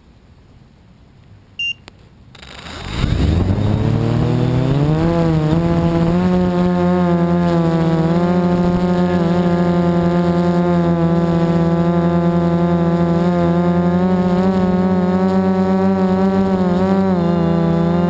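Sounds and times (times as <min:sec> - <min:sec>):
drone motors humming: 0:02.4 - 0:18.0.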